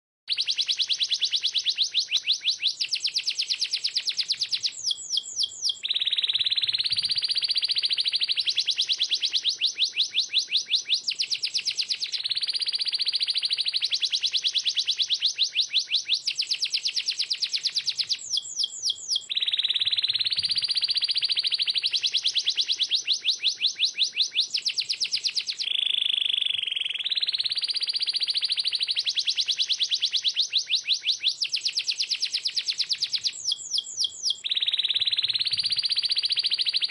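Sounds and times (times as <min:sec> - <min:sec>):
canary singing fast trills: 0:00.3 - 0:36.9.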